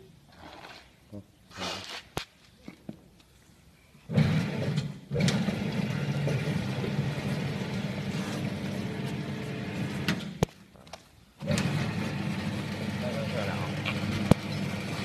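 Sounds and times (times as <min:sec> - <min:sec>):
machine motor hum: 0:04.1 - 0:10.4, 0:11.4 - 0:15.0.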